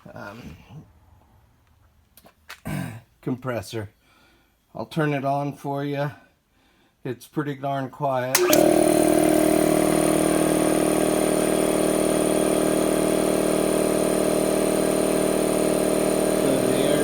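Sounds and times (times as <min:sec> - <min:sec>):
air compressor running: 0:08.4 - 0:17.0.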